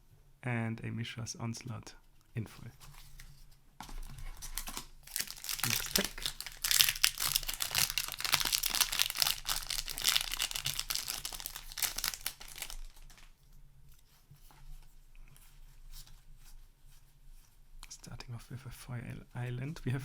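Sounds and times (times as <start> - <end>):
foil wrapper tearing and crinkling: 4.0 - 13.3.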